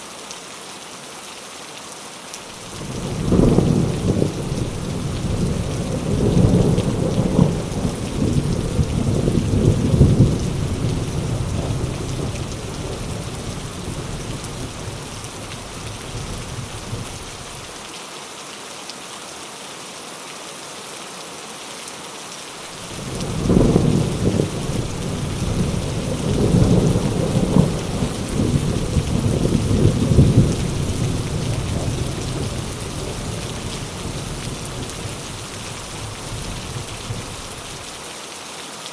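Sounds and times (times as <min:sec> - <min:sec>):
heavy rain falling: 0:00.0 - 0:38.9
thunder rumbling: 0:02.6 - 0:17.6, 0:22.8 - 0:37.9.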